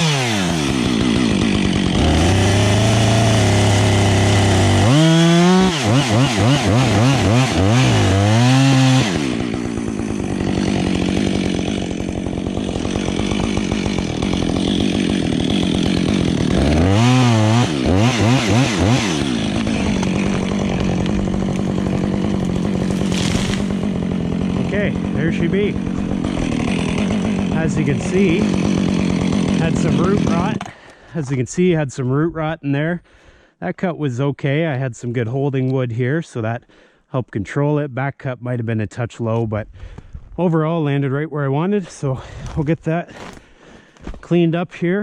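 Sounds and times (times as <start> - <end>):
chainsaw running high revs: 0.0 - 30.8
chainsaw throttle revving: 0.0 - 31.0.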